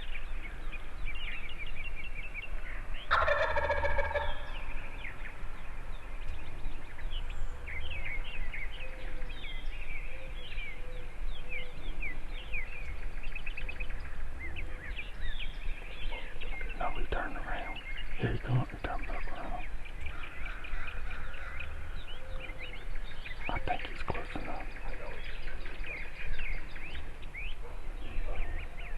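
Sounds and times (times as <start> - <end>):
songbirds chirping: 0.0 - 28.9
turkey gobbling: 3.1 - 4.6.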